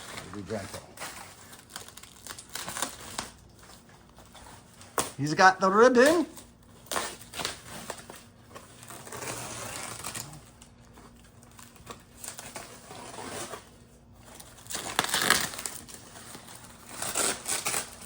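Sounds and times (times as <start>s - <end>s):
packing material rustling: 0.0s - 18.0s.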